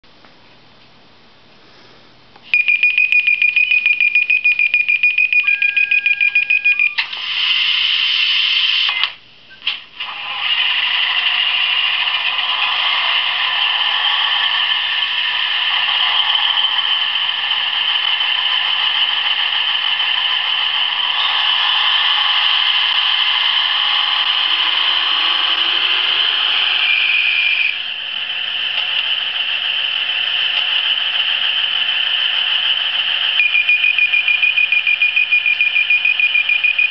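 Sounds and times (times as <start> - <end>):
diesel train engine from small speaker: 2.5 - 9.0, 9.6 - 36.9
high pulsing tone: 21.1 - 27.9.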